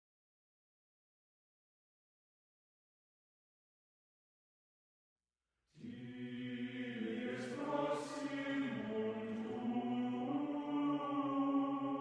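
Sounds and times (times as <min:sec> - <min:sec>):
chant-like singing: 0:05.8 - 0:12.0.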